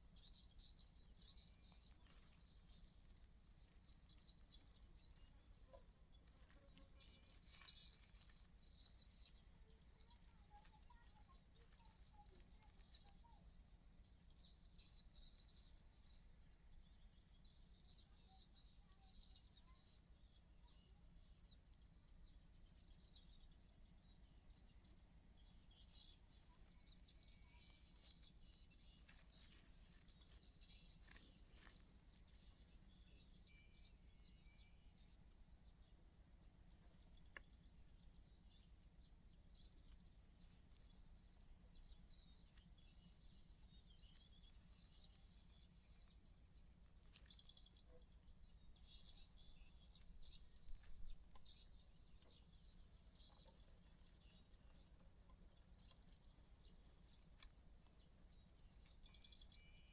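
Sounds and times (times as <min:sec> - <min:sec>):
high-pitched bird chirping: 0:01.4 - 0:13.4, 0:26.4 - 0:32.6.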